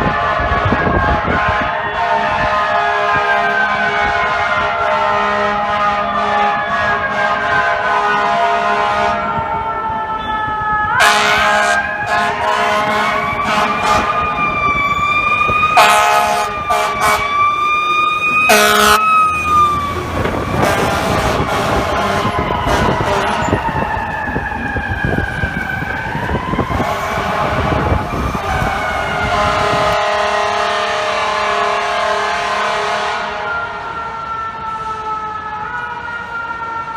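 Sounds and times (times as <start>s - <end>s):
air horn blasts: 0.0s - 9.4s, 11.0s - 14.3s, 15.8s - 17.4s, 18.5s - 19.1s, 20.5s - 23.6s, 26.7s - 33.5s
engine and traffic rumble: 0.0s - 36.9s
fire engine siren wailing: 0.0s - 36.9s.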